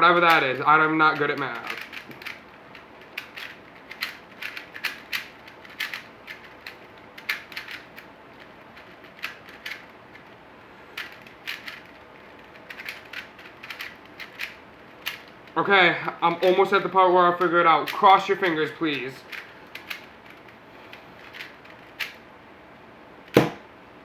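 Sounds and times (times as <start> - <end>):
puzzle cube layers clicking: 0.2 - 10.4, 11.0 - 15.6, 17.4 - 20.5.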